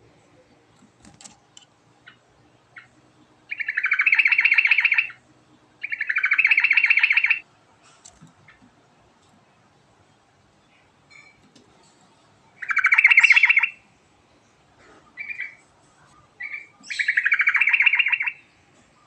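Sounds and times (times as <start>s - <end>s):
bird chirping and trilling: 2.0s - 5.2s, 5.8s - 7.4s, 12.6s - 13.8s, 15.1s - 19.0s.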